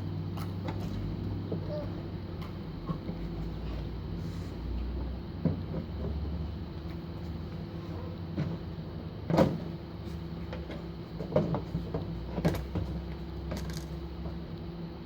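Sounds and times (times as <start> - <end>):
steady low hum: 0.0 - 15.0
bumper cover knocks and clunks: 8.0 - 14.4.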